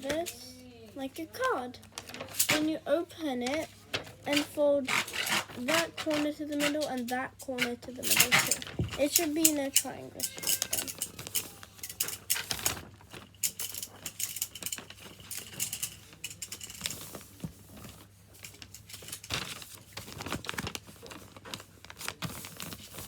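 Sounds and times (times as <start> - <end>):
paper fold creasing clicks: 1.4 - 2.7, 9.4 - 23.0
paper rustling: 1.4 - 23.0.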